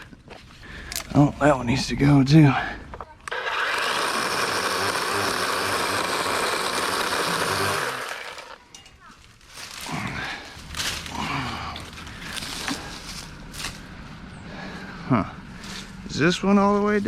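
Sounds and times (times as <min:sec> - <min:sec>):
electric chainsaw cutting branch: 0:03.2 - 0:08.7.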